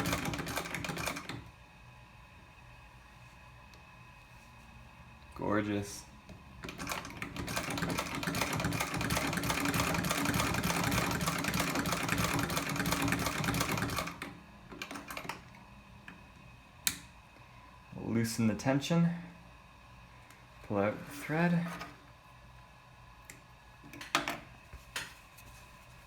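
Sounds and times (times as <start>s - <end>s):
treadle sewing machine rattling: 0.0s - 1.4s, 6.6s - 15.4s.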